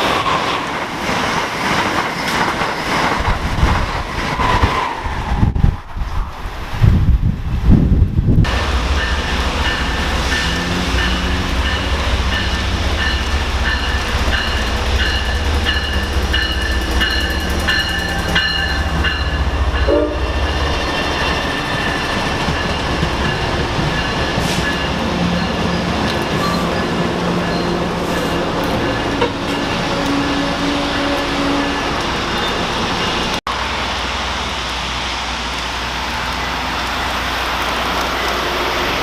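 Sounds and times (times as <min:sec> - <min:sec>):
train passing rumble: 0:00.0 - 0:39.0.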